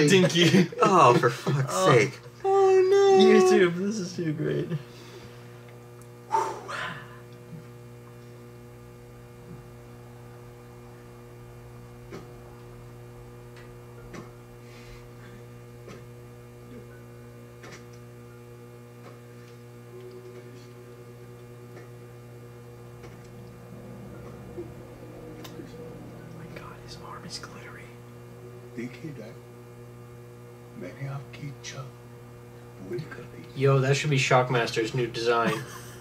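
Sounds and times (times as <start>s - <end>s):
electrical mains hum: 0.0s - 36.0s.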